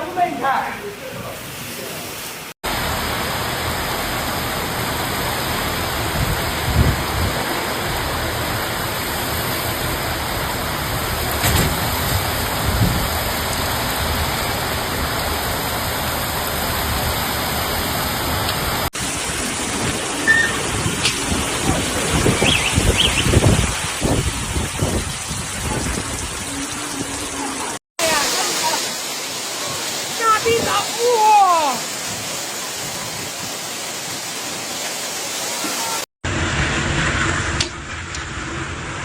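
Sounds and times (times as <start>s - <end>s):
heavy rain pouring: 0.0s - 39.0s
raindrop hits: 2.6s - 17.2s
low rumbles: 36.2s - 39.0s.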